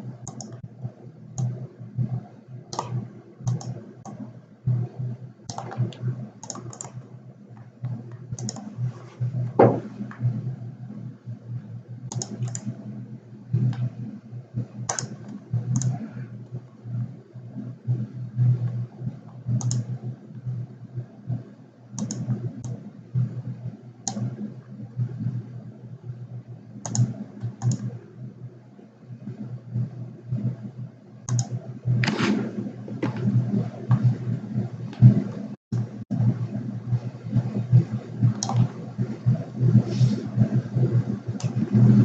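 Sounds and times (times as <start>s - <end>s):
low hum: 0.0s - 42.0s
mouse and keyboard clicks: 0.2s - 0.6s, 2.7s - 4.2s, 5.5s - 7.0s, 7.9s - 8.8s, 12.1s - 12.7s, 14.9s - 16.0s, 22.0s - 22.8s, 31.3s - 34.1s, 38.3s - 38.7s.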